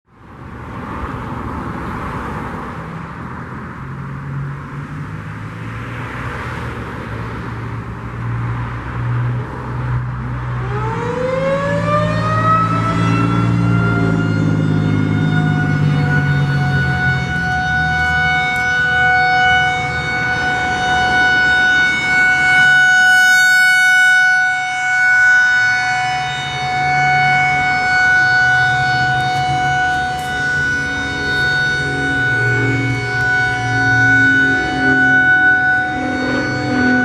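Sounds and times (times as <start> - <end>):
warning siren winding up: 10.6 - 37.0.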